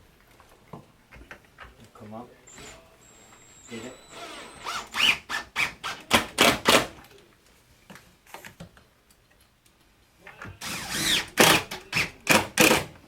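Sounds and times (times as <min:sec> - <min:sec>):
cordless screw gun driving screws: 0:04.1 - 0:06.9, 0:10.6 - 0:12.9.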